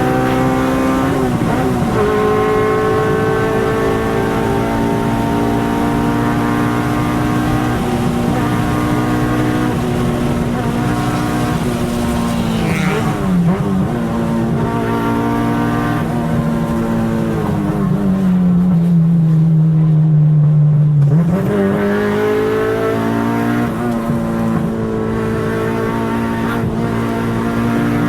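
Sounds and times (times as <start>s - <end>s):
car engine running: 0.0s - 28.0s.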